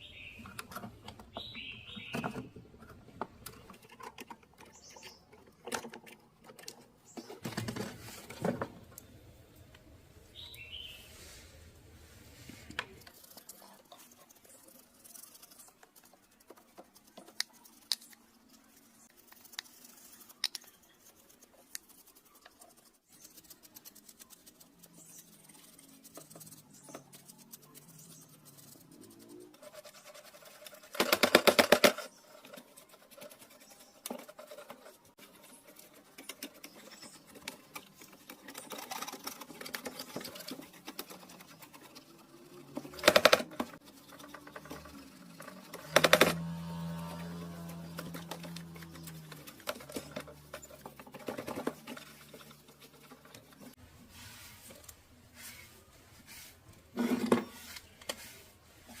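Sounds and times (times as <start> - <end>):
loud buzzing rattle: 45.6 - 49.7.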